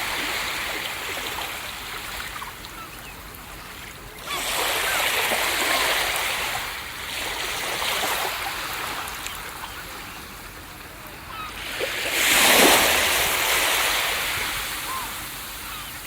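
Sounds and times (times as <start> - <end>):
ocean waves breaking on beach: 0.0 - 16.0.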